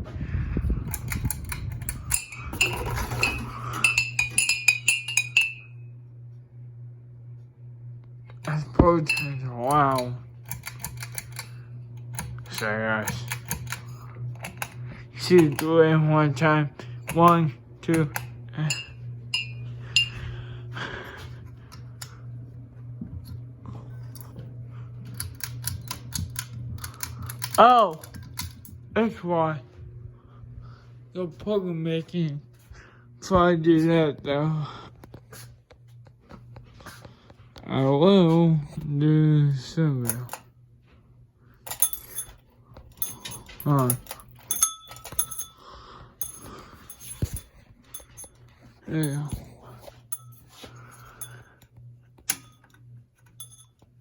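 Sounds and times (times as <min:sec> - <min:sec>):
ceiling fans humming: 0:00.0 - 0:54.0
light clinking strikes: 0:09.0 - 0:09.8, 0:43.0 - 0:45.6.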